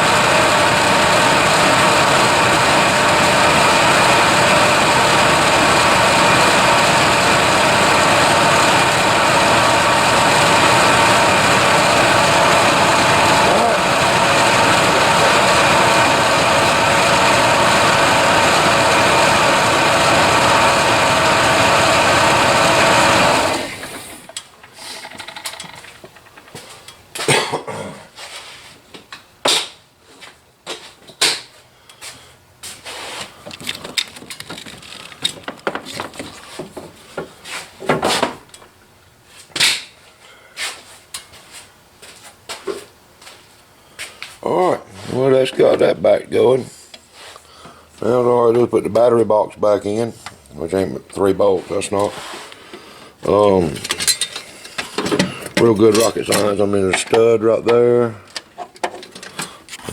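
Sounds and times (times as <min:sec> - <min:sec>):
pickup truck engine running: 0:00.0 - 0:24.3
clicks and knocks: 0:24.3 - 0:27.0.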